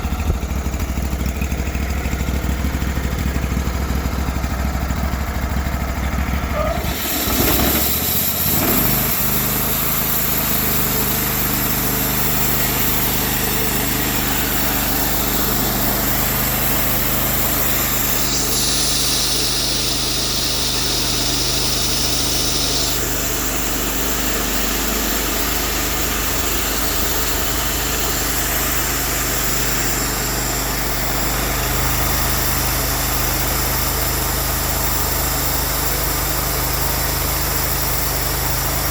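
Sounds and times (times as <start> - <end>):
sawmill engine running: 0.0 - 38.9
band blade cutting log: 6.7 - 15.5.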